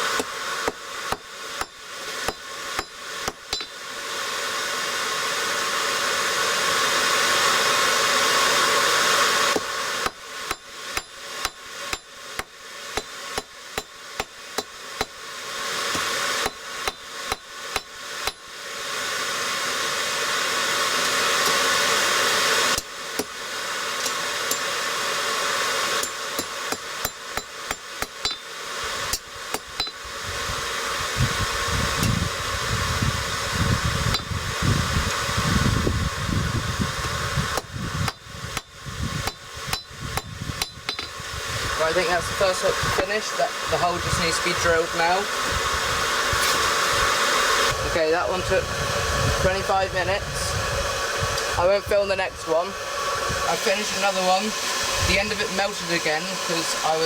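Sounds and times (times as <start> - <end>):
hammer striking hot steel on anvil: 0.2 - 3.8, 9.5 - 15.2, 15.9 - 18.5, 22.8 - 23.4, 24.0 - 24.8, 26.0 - 30.0, 37.6 - 41.2.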